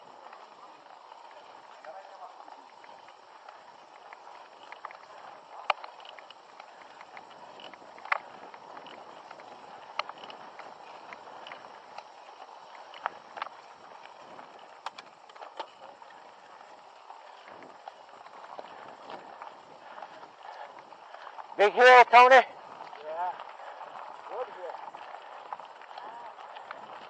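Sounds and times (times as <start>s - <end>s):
bike tyres rolling on dirt: 0.0s - 27.0s
bike clicks and knocks: 0.2s - 21.5s.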